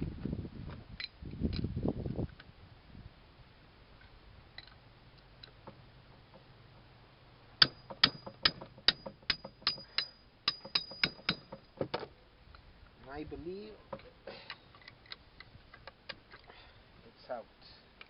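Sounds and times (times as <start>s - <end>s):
hammer tapping on steel: 7.6s - 11.7s.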